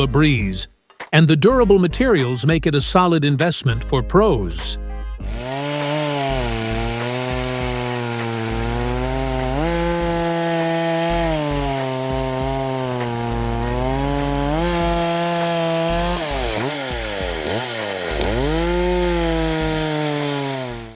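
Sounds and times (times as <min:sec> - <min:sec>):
chainsaw cutting wood: 0:05.2 - 0:20.9.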